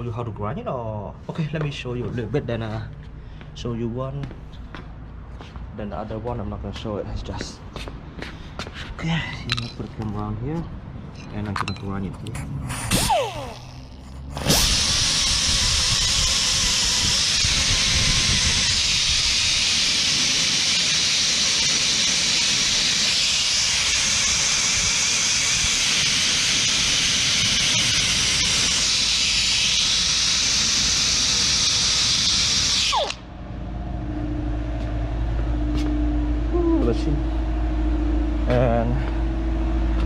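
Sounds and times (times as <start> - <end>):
motor winding down whine: 12.7 - 40.0
power grinder grinding: 12.8 - 33.2.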